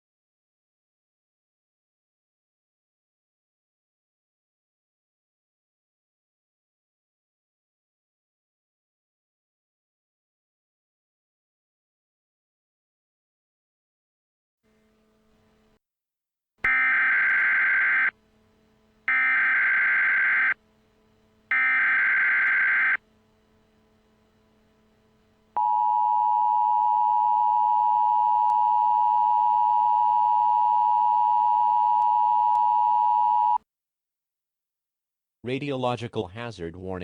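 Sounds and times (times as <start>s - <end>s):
warbling digital data tones: 19.1s - 20.6s, 21.5s - 23.0s.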